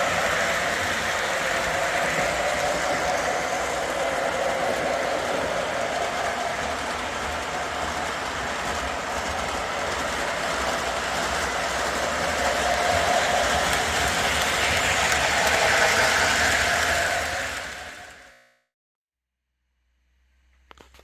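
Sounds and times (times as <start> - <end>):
model train motors whirring: 0.0 - 18.4
wheels rolling over rails: 0.0 - 18.4.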